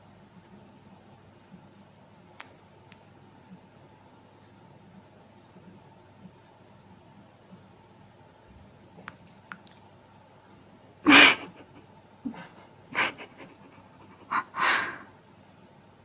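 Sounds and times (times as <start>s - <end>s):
parrot hissing huffs: 14.3s - 15.1s.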